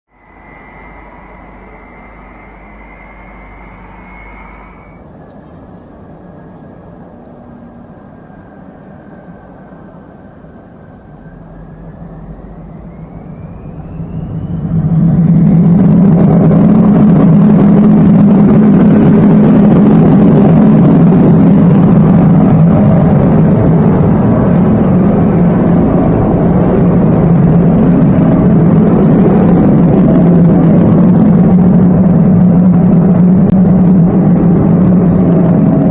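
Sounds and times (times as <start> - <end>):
jet engine whistle: 0.1 - 5.1, 10.4 - 31.6
deep jet rumble: 0.1 - 7.1, 9.4 - 35.9.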